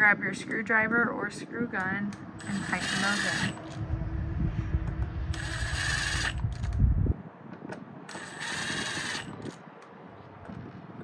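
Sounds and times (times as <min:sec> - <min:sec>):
cordless screw gun running: 0:02.4 - 0:03.8, 0:05.3 - 0:06.8, 0:08.1 - 0:09.6.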